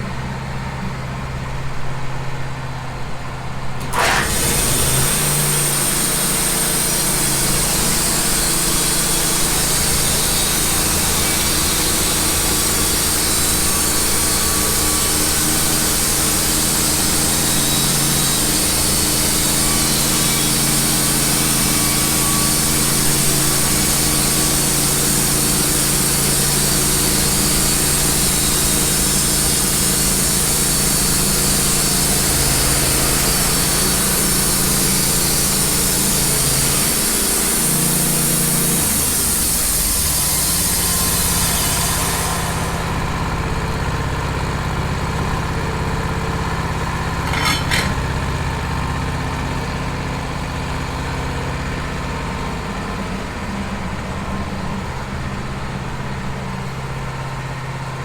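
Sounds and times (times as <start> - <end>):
sawmill engine running: 2.4 - 58.0
saw blade hissing through log: 3.8 - 43.0, 47.2 - 48.1
brief rattle: 47.2 - 48.2.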